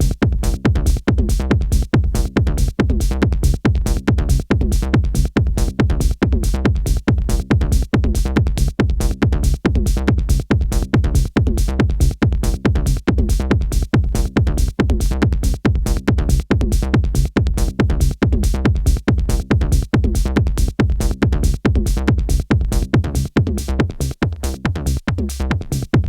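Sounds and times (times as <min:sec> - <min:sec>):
heavy sustained bass line: 0:00.0 - 0:24.2
techno music with pulsing beat: 0:00.0 - 0:26.0.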